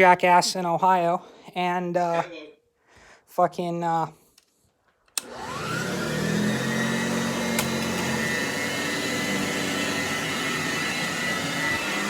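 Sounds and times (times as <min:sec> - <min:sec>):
vacuum cleaner running: 0:05.2 - 0:12.0.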